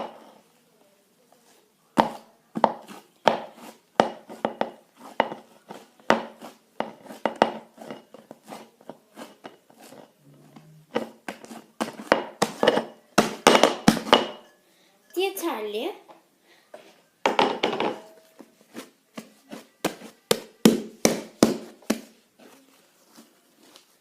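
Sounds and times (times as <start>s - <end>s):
utensil scraping a bowl: 2.1s - 13.0s.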